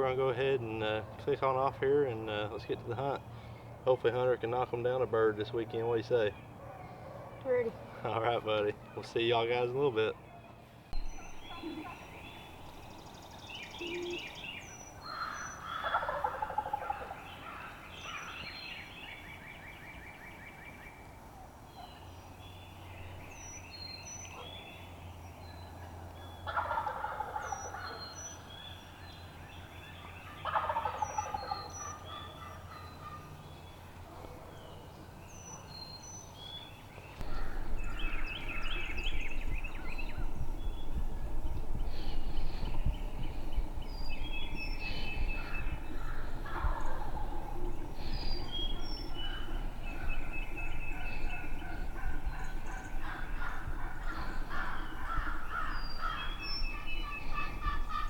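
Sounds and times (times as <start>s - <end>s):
songbirds chirping: 0.0s - 58.0s
turkey gobbling: 15.1s - 17.8s, 26.4s - 28.0s, 30.4s - 33.3s, 45.4s - 50.1s
low rumble: 37.2s - 58.0s.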